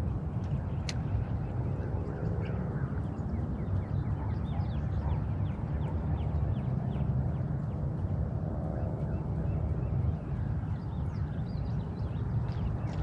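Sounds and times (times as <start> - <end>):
steady low rumble: 0.0 - 13.0
birds chirping: 0.5 - 8.1.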